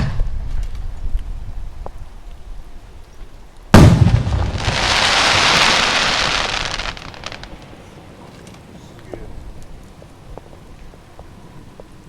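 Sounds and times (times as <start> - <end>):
firework crackling: 3.7 - 9.9
firework shell boom: 3.8 - 5.5.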